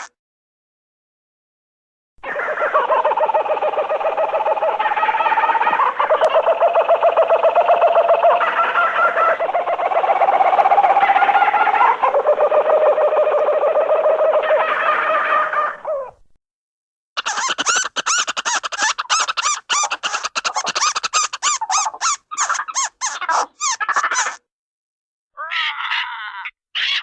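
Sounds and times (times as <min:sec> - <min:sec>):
cartoon animal chattering: 0:17.2 - 0:24.4.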